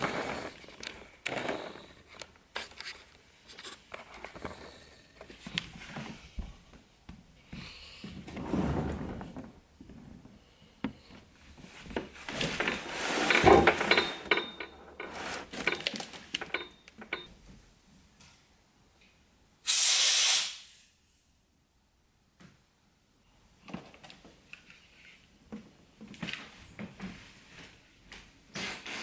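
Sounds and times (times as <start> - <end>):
objects rustling and knocking: 0.0 - 17.6
loud even hiss: 19.6 - 21.0.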